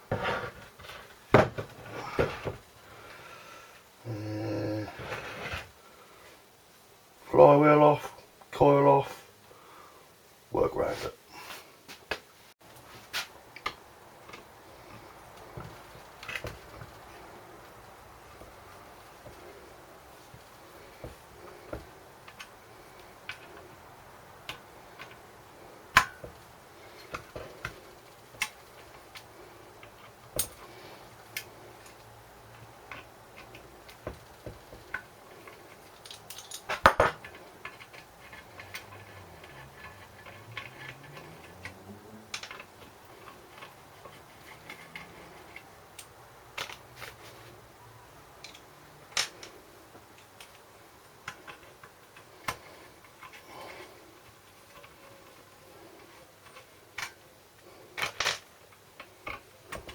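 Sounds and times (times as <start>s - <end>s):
hand tools clicking and knocking: 25.9s - 47.3s, 48.3s - 59.9s.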